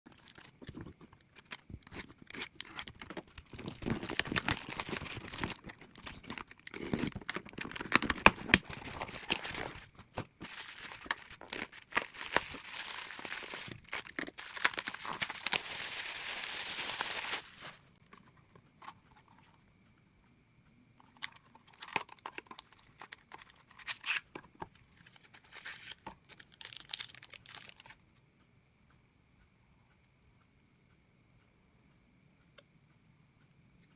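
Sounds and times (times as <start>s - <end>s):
packaging crinkling and tearing: 0.1s - 17.8s, 25.0s - 27.9s.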